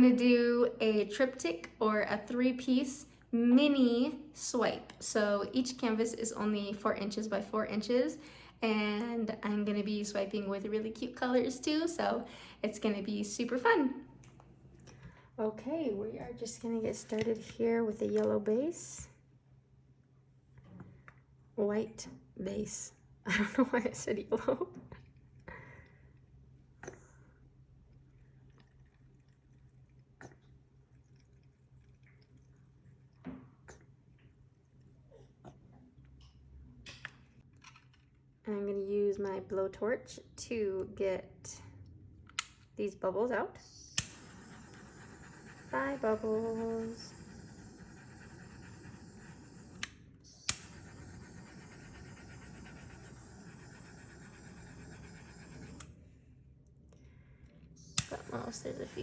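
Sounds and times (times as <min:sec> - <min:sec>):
blowtorch hissing: 0:43.6 - 0:55.9, 0:57.8 - 0:59.0
low hum: 0:43.6 - 0:56.1
sharp clicks: 0:49.7 - 0:51.0, 0:57.8 - 0:58.5.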